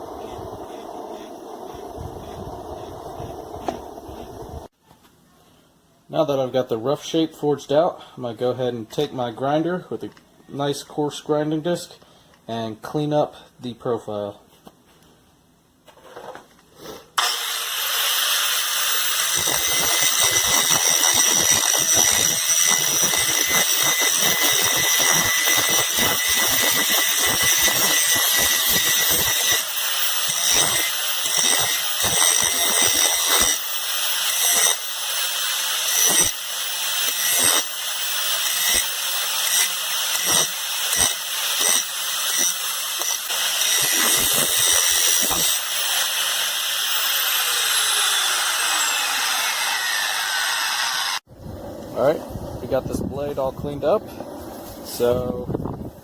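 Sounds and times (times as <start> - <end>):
grinder grinding steel: 0.0 - 4.7, 17.2 - 51.3.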